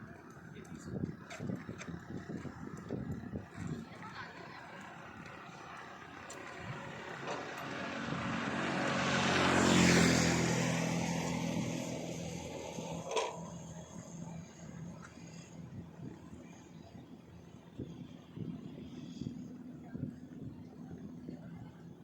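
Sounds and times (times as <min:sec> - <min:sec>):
motor engine passing by: 0:01.5 - 0:16.6.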